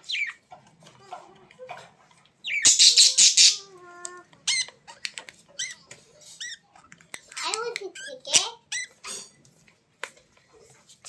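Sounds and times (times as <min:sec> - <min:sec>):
bird squawking harshly: 0:02.5 - 0:03.6.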